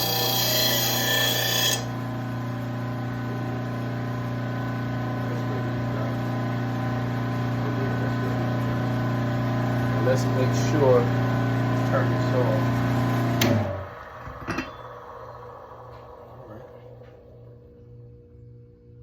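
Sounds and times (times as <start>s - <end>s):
blade sharpener grinding steel: 0.0s - 1.9s
sharpener motor humming: 0.0s - 2.0s.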